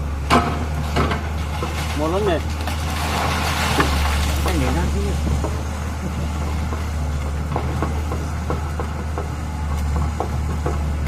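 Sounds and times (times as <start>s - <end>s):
diesel engine droning: 0.0s - 11.0s.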